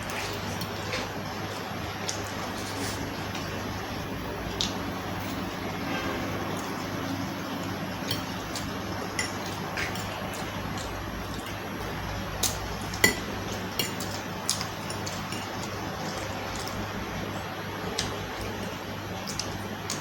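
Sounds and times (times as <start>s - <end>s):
eating clicks and utensil clinks: 12.4s - 16.8s.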